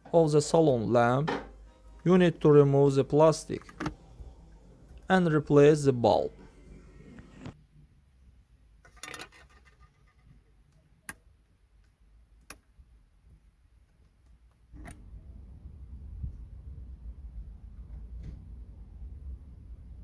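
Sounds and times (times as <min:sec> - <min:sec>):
low rumble: 0:14.9 - 0:20.0.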